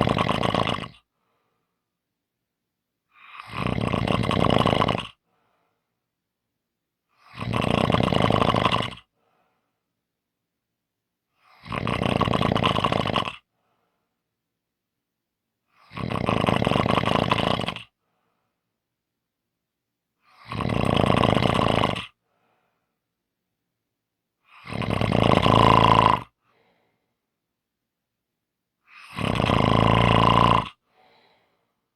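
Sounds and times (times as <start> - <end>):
person snoring loudly: 0.0 - 1.1, 3.1 - 5.2, 7.2 - 9.1, 11.4 - 13.5, 15.7 - 18.0, 20.2 - 22.2, 24.4 - 26.4, 28.9 - 30.8.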